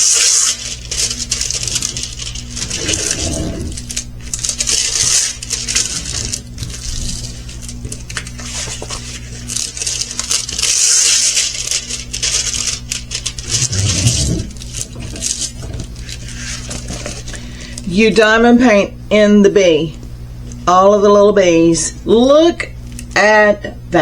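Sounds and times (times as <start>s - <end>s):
plastic packaging crinkling: 0.0s - 17.9s.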